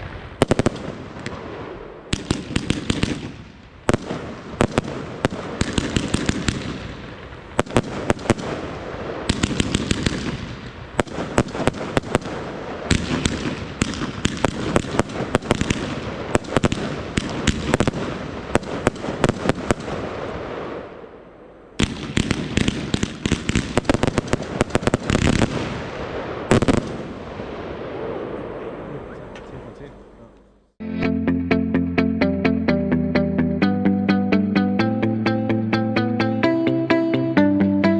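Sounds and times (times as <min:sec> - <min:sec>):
firework launch shots and bursts: 0:00.0 - 0:21.1, 0:21.8 - 0:28.5
firework crackling: 0:00.0 - 0:29.0.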